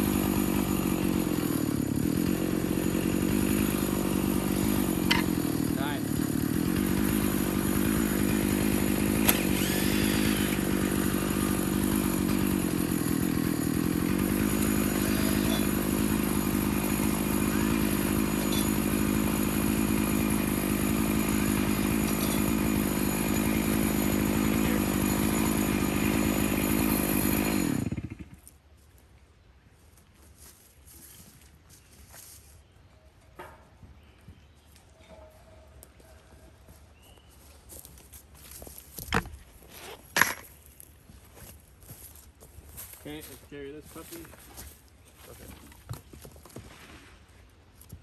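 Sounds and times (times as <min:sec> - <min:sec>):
chainsaw cutting log: 0:00.0 - 0:28.5, 0:38.6 - 0:40.8.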